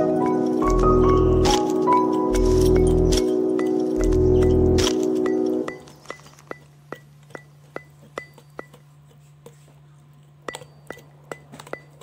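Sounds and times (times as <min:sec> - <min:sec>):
low hum: 0:00.0 - 0:06.3.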